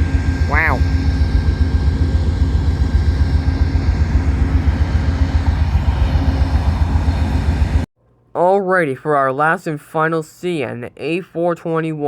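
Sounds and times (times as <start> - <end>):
diesel locomotive idling: 0.0 - 7.9.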